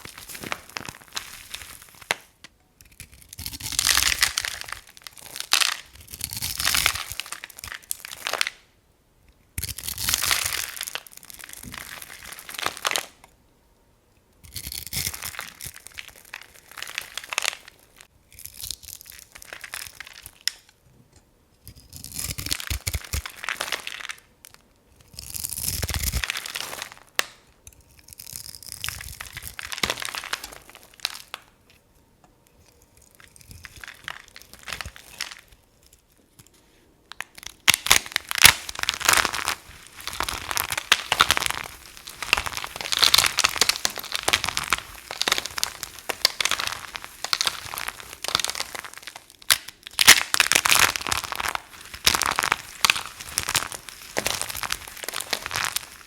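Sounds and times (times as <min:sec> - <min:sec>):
soap crunching: 0:14.4 - 0:20.6, 0:25.1 - 0:27.4, 0:28.0 - 0:31.5, 0:33.0 - 0:36.0, 0:37.1 - 0:56.0.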